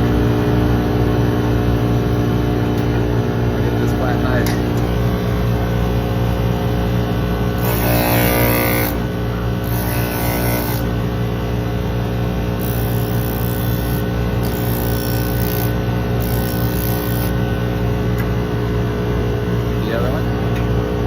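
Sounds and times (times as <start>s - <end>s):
machine humming: 0.0s - 21.0s
knife grinding on abrasive wheel: 7.6s - 9.0s, 9.6s - 10.9s, 12.6s - 17.4s.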